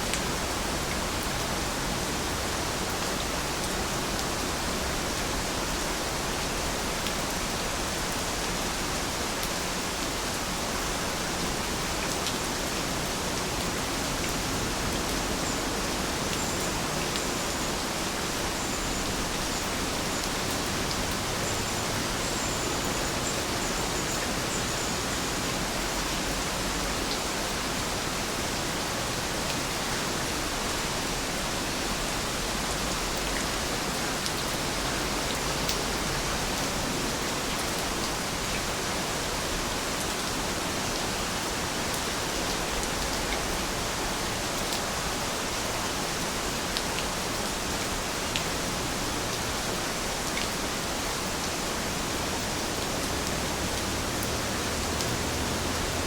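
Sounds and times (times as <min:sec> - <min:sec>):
rain falling: 0:00.0 - 0:56.0.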